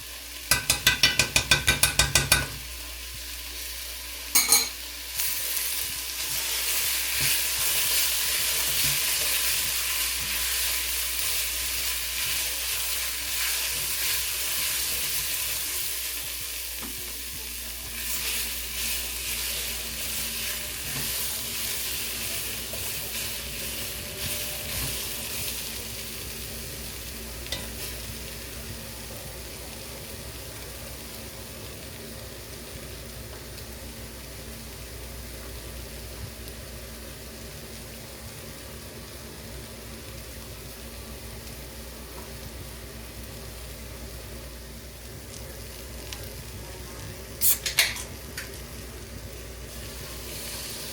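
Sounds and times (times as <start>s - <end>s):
food sizzling in a pot: 0.0s - 50.9s
stirring taps: 0.5s - 2.6s.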